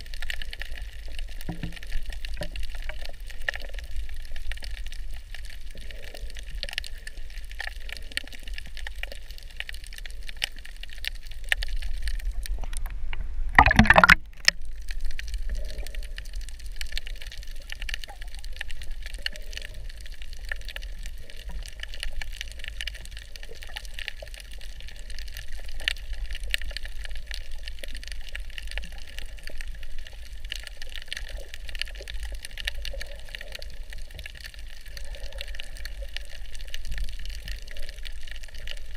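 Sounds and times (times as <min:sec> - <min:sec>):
low underwater rumble: 0:08.0 - 0:38.9
rush of water: 0:13.5 - 0:14.6.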